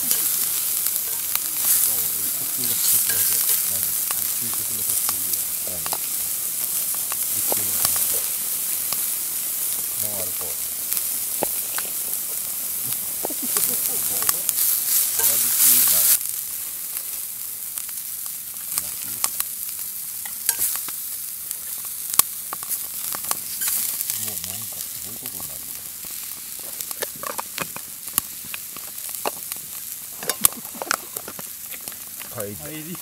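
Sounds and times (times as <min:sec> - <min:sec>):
food sizzling in a pan: 0:00.0 - 0:33.0.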